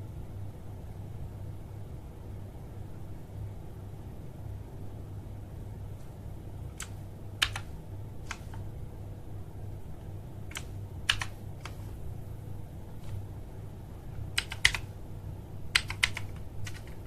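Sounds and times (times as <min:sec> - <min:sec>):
low steady hum: 0:00.0 - 0:17.0
mechanical keyboard key clicks: 0:14.4 - 0:14.8, 0:15.8 - 0:17.0.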